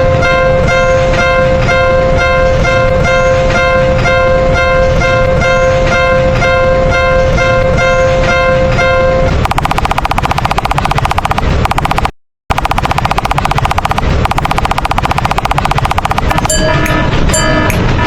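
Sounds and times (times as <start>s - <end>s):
fast rattle of sharp strikes: 9.4s - 18.0s.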